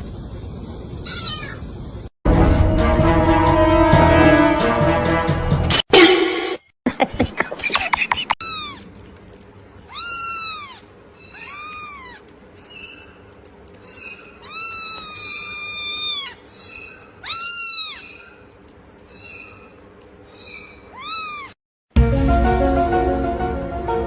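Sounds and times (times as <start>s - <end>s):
cat meowing: 1.1s - 1.6s, 8.4s - 8.9s, 9.8s - 12.3s, 13.8s - 18.3s, 20.4s - 21.6s.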